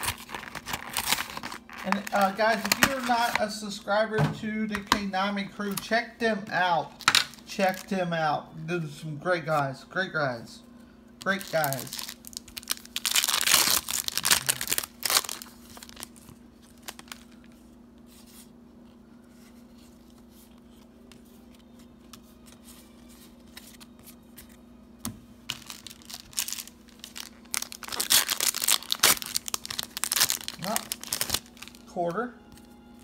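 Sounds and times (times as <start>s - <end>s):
foil wrapper ripping: 0.0s - 3.4s, 11.3s - 17.6s, 25.5s - 31.9s
foil crinkling and rustling: 0.0s - 3.6s, 11.3s - 17.6s, 25.4s - 31.9s.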